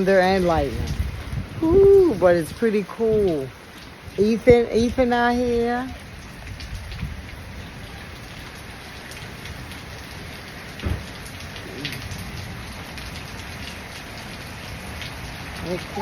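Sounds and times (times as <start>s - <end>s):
steady rain falling: 0.0s - 16.0s
brief low thump: 10.8s - 11.1s.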